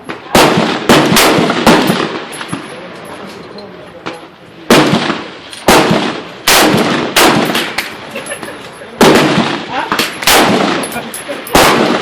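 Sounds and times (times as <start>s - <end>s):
rifle shots: 0.1s - 2.7s, 4.7s - 8.0s, 9.0s - 12.0s.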